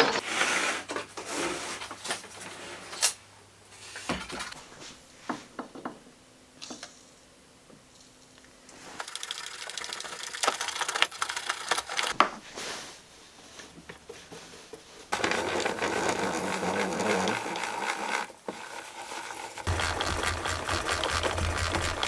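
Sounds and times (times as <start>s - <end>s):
table saw crank grinding and squeaking: 15.2s - 22.0s.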